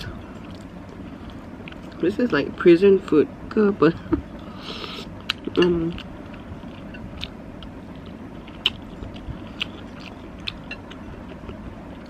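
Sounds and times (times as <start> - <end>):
person chewing pasta: 0.1 - 2.0, 4.3 - 12.0.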